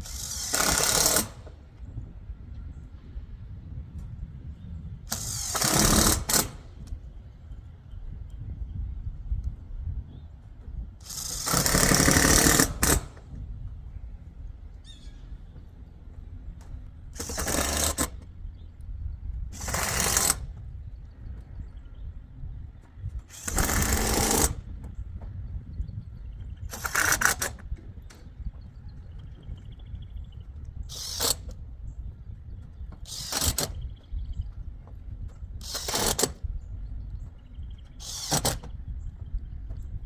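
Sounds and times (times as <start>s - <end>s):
impact driver driving screws: 0.0s - 1.6s, 5.1s - 6.9s, 11.0s - 13.4s, 17.2s - 18.3s, 19.6s - 20.6s, 23.2s - 24.7s, 26.7s - 28.2s, 30.9s - 31.6s, 32.9s - 34.0s, 35.6s - 36.4s, 37.8s - 38.8s.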